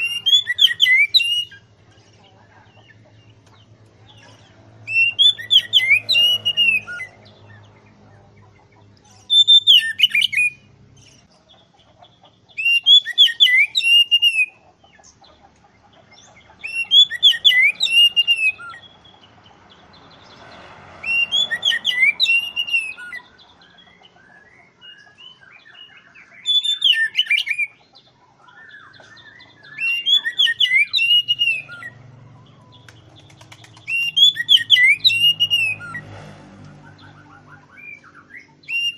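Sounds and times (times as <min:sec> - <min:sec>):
bird singing whistled phrases: 0:00.0 - 0:01.7, 0:04.9 - 0:07.2, 0:09.3 - 0:10.7, 0:12.6 - 0:14.6, 0:16.6 - 0:19.0, 0:21.0 - 0:23.3, 0:24.3 - 0:27.8, 0:28.5 - 0:32.0, 0:33.8 - 0:36.0, 0:37.5 - 0:38.9.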